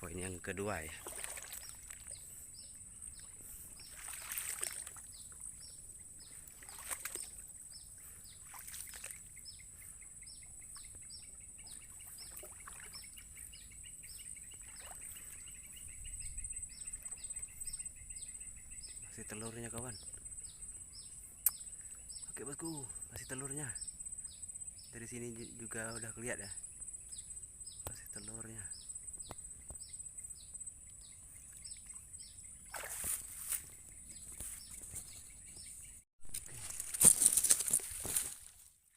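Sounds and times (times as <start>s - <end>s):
birds chirping: 0.0s - 38.4s
rustling: 36.4s - 38.8s.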